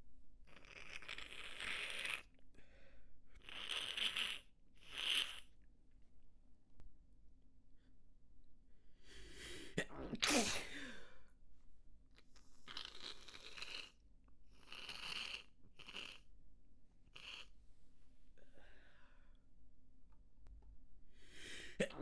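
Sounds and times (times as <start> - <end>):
person sneezing: 9.8 - 11.1, 21.8 - 22.0.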